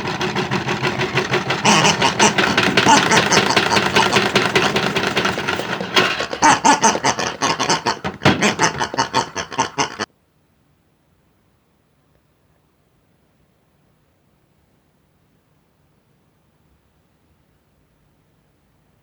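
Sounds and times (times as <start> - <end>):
toy washing machine clattering: 0.0 - 10.1.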